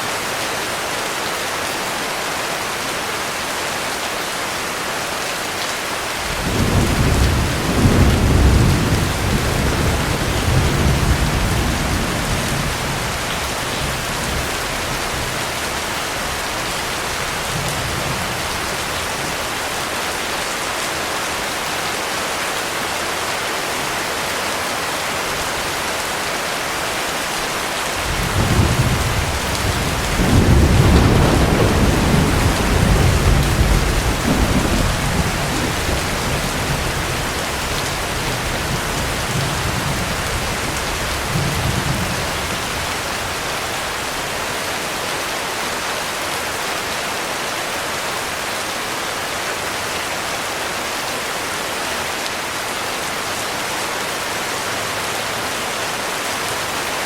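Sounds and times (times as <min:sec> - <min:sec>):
heavy rain falling: 0:00.0 - 0:57.0
thunder rumbling: 0:06.3 - 0:15.5, 0:28.0 - 0:44.1.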